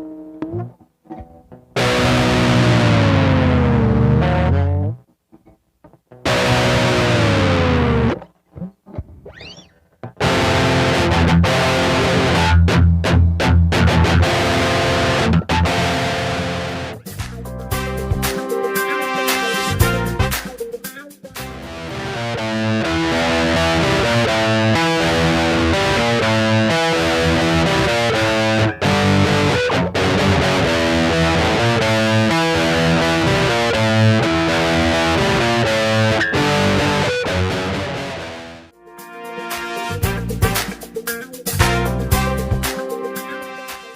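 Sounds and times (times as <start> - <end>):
rock band with distorted guitar: 1.8 - 4.8, 6.2 - 8.2, 9.3 - 43.9.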